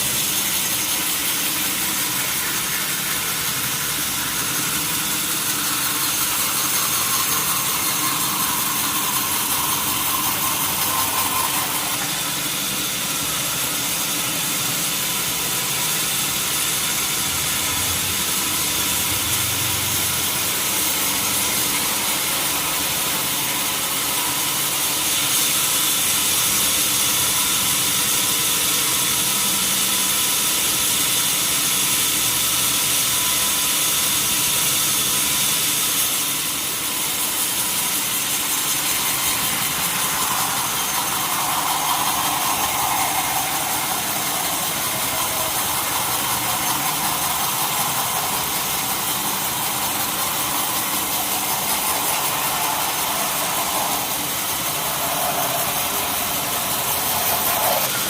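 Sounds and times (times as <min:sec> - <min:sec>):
sawmill saw hissing: 0:00.0 - 0:58.0
low mechanical hum: 0:36.0 - 0:58.0.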